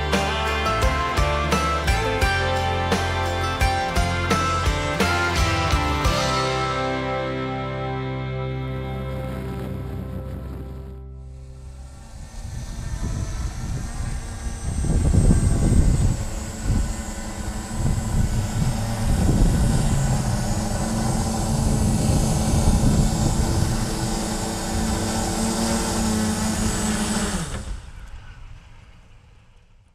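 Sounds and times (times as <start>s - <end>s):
drone propellers buzzing: 0.0s - 29.4s
wind rumble on microphone: 8.9s - 29.4s.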